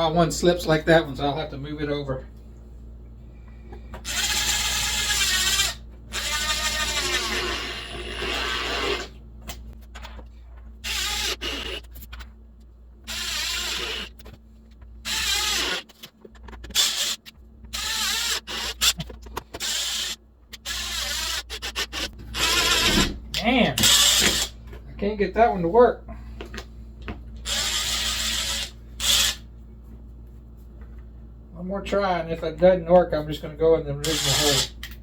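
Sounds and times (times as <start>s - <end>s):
power drill driving screws: 4.0s - 9.1s, 10.8s - 11.8s, 13.1s - 14.1s, 15.1s - 15.9s, 16.7s - 19.0s, 19.6s - 23.1s, 23.8s - 24.5s, 27.5s - 29.4s, 34.0s - 34.7s.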